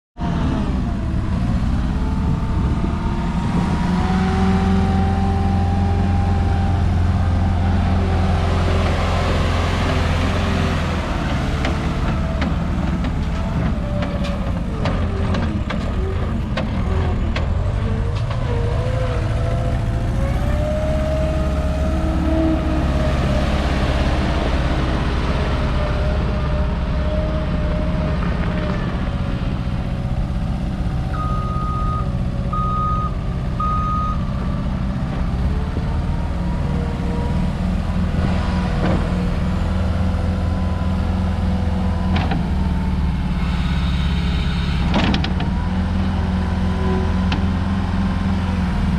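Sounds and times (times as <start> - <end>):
engine whine wavering: 0.2 - 34.2
diesel engine running: 0.2 - 48.9
reversing alarm beeps: 31.1 - 34.2.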